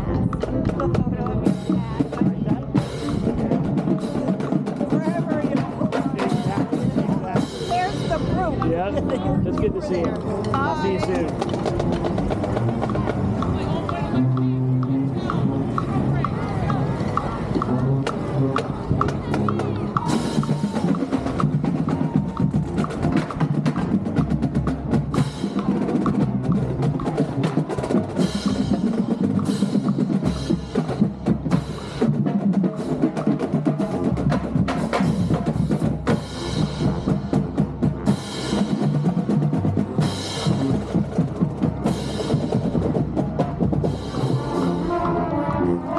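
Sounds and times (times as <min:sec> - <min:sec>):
tuned bass drums: 0:00.0 - 0:32.3.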